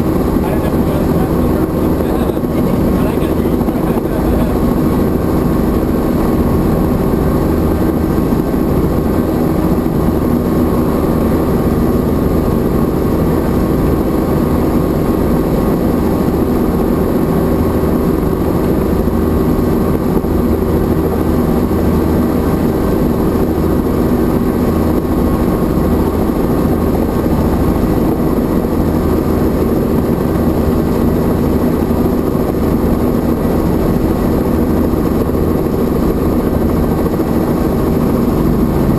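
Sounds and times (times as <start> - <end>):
helicopter engine and rotor drone: 0.0 - 38.9.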